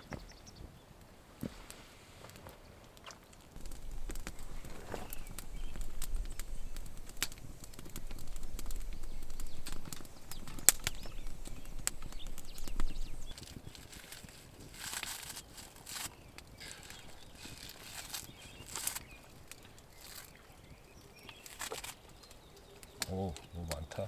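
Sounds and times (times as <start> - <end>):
sharp clicks: 3.6 - 13.4
wind buffeting microphone: 3.6 - 14.8, 16.1 - 24.0
flapping: 3.6 - 24.0.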